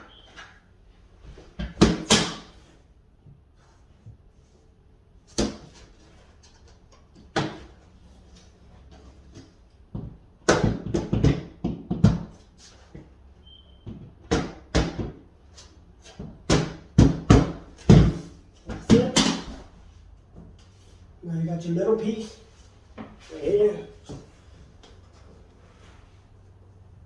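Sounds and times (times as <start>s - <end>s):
flooring planks knocking: 9.3s - 12.4s, 16.1s - 19.6s.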